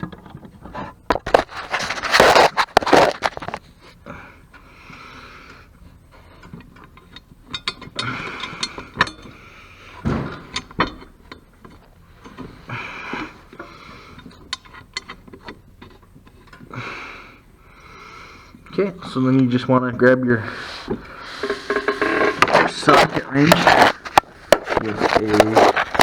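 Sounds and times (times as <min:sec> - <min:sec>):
metal tools scraping and clattering: 0:06.2 - 0:16.7, 0:20.4 - 0:26.0.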